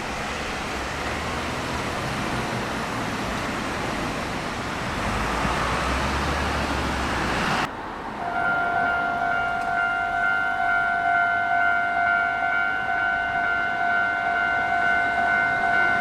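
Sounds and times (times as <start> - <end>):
passing vehicle rushing: 0.0 - 9.6
steady high tone: 8.2 - 16.0.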